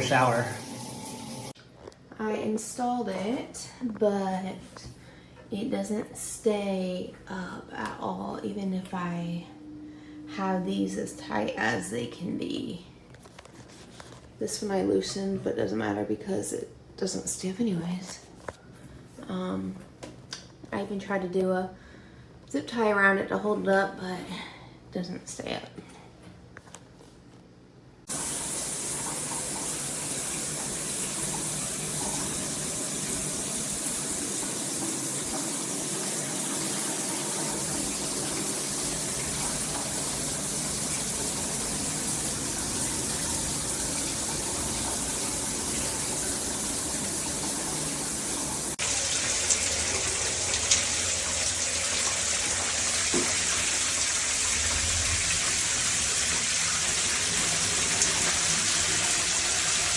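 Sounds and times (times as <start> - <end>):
shower water spraying: 0.0 - 1.6, 28.1 - 59.9.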